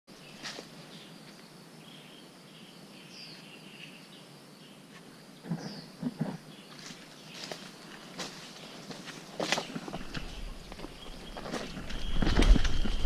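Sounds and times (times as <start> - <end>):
birds chirping: 0.1 - 13.0
outdoor background hiss: 0.1 - 13.0
rustles: 0.2 - 1.6, 4.8 - 13.0.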